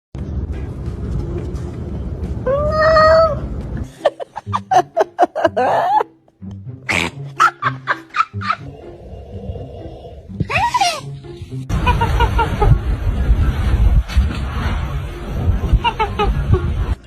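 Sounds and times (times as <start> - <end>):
cat meowing and chirping: 2.5 - 3.4.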